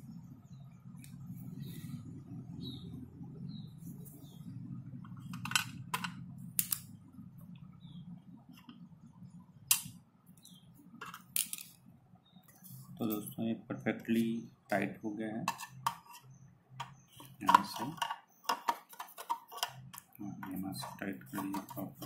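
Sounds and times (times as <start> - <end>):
steady low hum: 0.0 - 22.0
metal tools clicking and tapping: 15.5 - 22.0.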